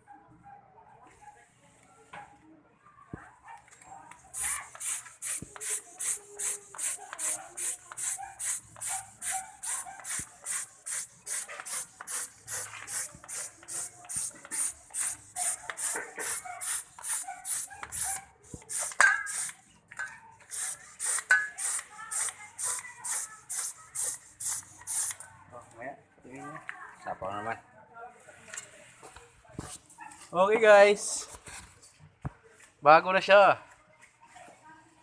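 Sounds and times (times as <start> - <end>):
plunger rubbing: 4.3 - 19.6
sprayer hissing: 4.4 - 19.6, 20.5 - 25.2.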